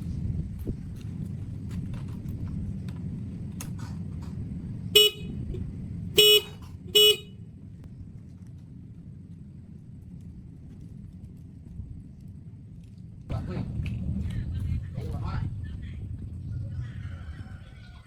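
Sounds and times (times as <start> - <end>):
steady low rumble: 0.0 - 18.0
motorcycle horn honks: 5.0 - 5.5, 6.2 - 7.4.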